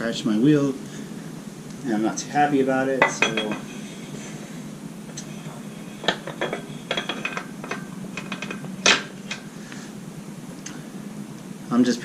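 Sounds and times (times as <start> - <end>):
metal tools clinking: 3.0 - 3.8, 5.2 - 9.4
loud ringing metal clank: 3.0 - 3.9.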